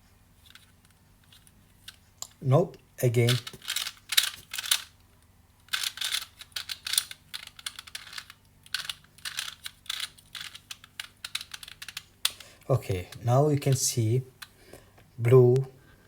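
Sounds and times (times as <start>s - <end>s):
plastic puzzle cube clicking: 3.3s - 5.0s, 5.7s - 13.2s.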